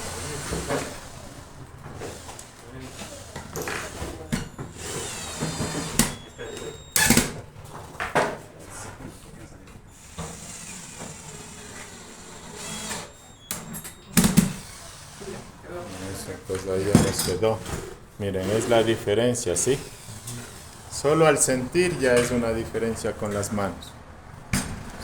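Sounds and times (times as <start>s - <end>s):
power drill driving screws: 0.0s - 7.4s, 10.0s - 16.9s.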